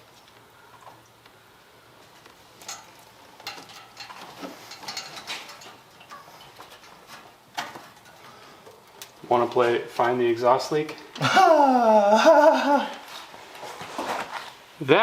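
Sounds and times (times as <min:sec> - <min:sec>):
metal parts clinking and knocking: 0:02.6 - 0:06.2.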